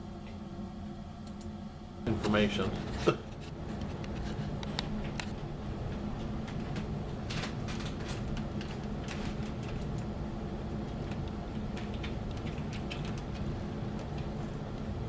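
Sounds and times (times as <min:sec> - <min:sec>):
steady low hum: 0:00.0 - 0:15.0
laptop keys and touchpad clicking: 0:10.9 - 0:14.3.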